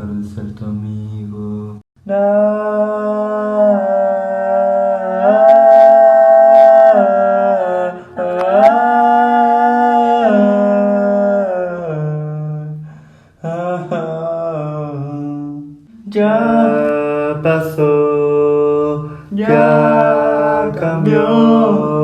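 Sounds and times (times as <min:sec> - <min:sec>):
voices humming held chords: 0:02.0 - 0:10.9, 0:15.8 - 0:18.3, 0:19.2 - 0:22.0.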